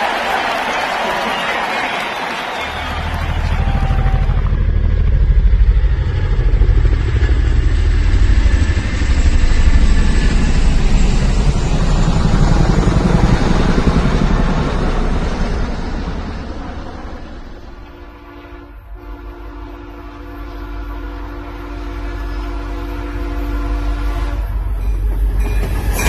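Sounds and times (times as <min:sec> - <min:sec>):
engine throbbing: 0:02.6 - 0:18.0.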